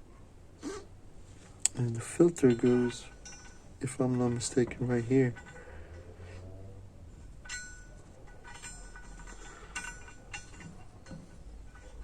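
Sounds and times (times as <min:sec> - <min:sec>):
light metallic clinks: 0:02.3 - 0:06.6, 0:07.2 - 0:12.0.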